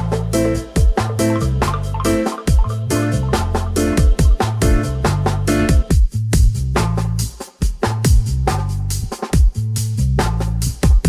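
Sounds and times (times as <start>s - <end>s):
crisp high percussion: 0.0s - 6.0s
electronic dance music: 0.0s - 6.0s
sustained bass line: 0.0s - 7.2s
deep kick drum hits: 2.5s - 2.7s, 4.0s - 5.0s.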